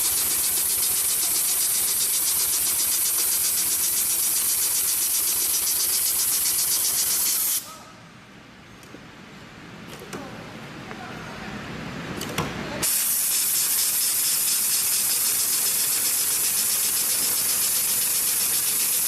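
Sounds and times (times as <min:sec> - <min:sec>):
sewing machine running fast: 0:00.0 - 0:07.4, 0:13.1 - 0:19.0.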